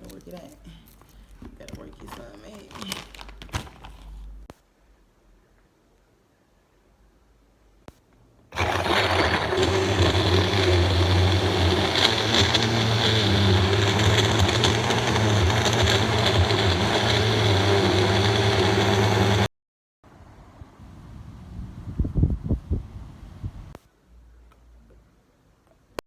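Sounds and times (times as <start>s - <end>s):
blender running at high speed: 8.6s - 19.5s.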